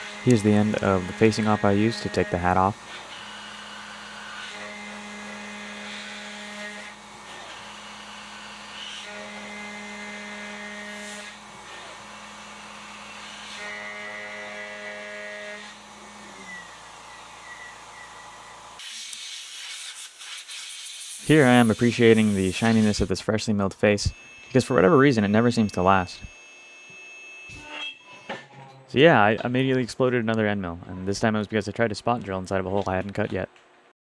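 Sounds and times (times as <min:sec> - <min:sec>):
spindle winding down: 0:00.0 - 0:02.8
metal cutting tones: 0:00.0 - 0:06.3, 0:21.0 - 0:33.5
mill spindle humming: 0:00.0 - 0:10.4, 0:21.2 - 0:27.8.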